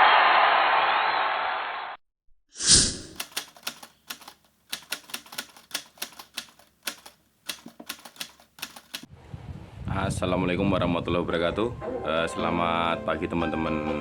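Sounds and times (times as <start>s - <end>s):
sharp irregular clicks: 3.2s - 9.1s.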